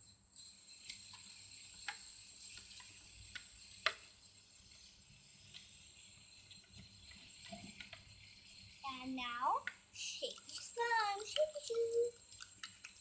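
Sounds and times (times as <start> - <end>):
faint steady hiss: 0.0 - 13.0.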